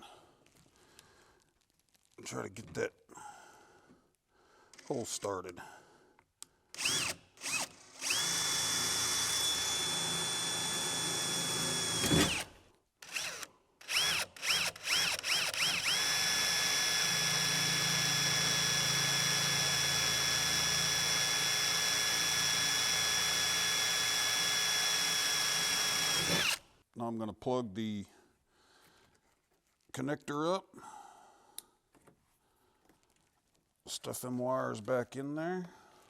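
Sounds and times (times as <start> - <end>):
power drill drilling sheet metal: 6.8 - 26.6.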